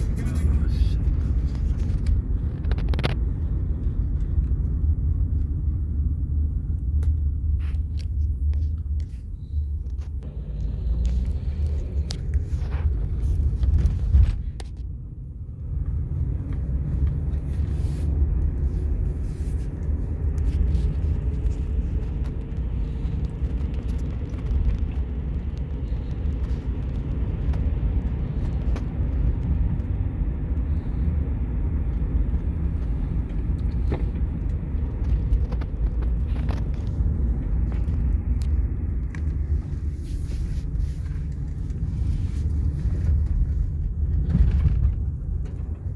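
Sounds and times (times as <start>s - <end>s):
wheels rumbling on road: 0.0s - 45.9s.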